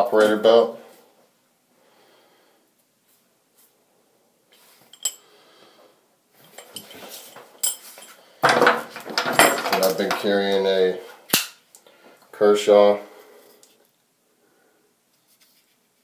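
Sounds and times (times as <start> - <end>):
faint rustling: 4.5 - 11.2
small clicks and clinks: 4.9 - 5.3, 6.4 - 8.2.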